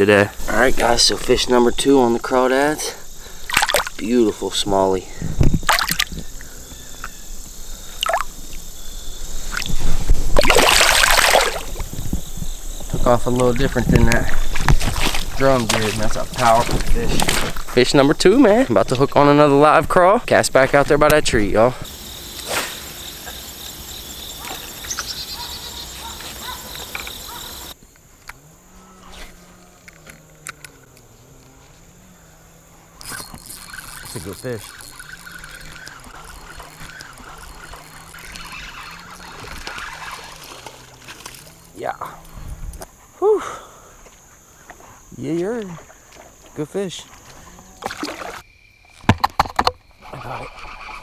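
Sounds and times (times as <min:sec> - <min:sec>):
crickets trilling: 0:00.0 - 0:51.0
water splashing and dripping: 0:02.6 - 0:04.7, 0:05.4 - 0:27.8.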